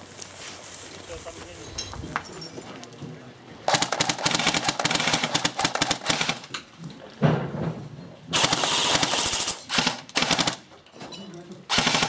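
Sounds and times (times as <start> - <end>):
airsoft guns firing bursts: 3.7 - 6.6, 8.4 - 10.7, 11.7 - 12.0.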